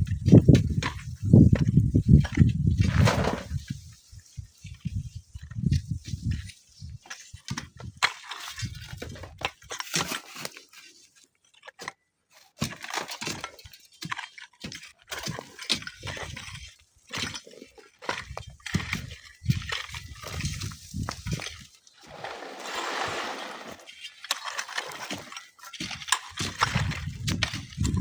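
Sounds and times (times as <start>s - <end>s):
dry sand crunching and sliding: 21.9s - 25.3s.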